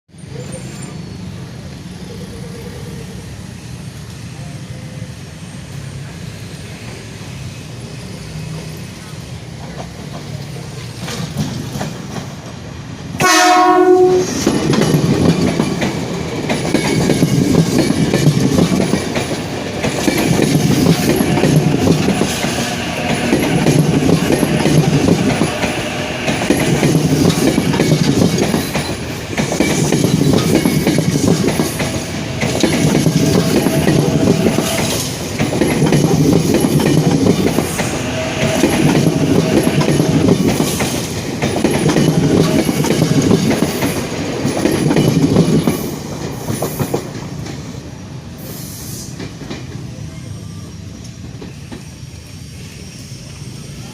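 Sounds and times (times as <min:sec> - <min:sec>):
train rumble: 0:00.1 - 0:53.9
train wheels clattering: 0:09.5 - 0:47.8
train horn blast: 0:13.2 - 0:14.5, 0:31.9 - 0:35.2, 0:37.8 - 0:40.3.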